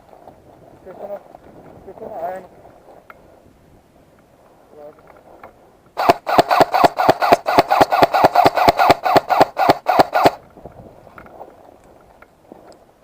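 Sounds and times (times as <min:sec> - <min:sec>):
airsoft gun automatic fire: 0:06.0 - 0:10.4.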